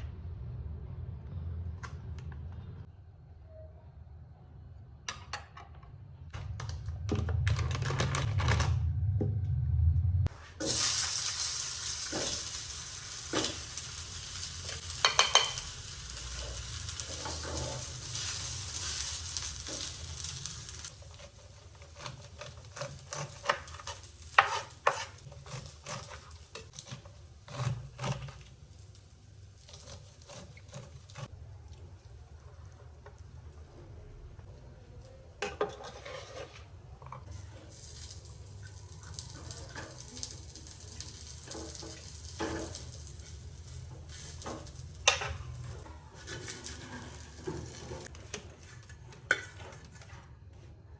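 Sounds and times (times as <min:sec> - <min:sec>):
food sizzling: 0:10.3 - 0:31.3, 0:37.3 - 0:49.9
utensil scraping a pan: 0:16.2 - 0:28.6, 0:29.7 - 0:31.3, 0:35.4 - 0:40.8, 0:41.4 - 0:50.2.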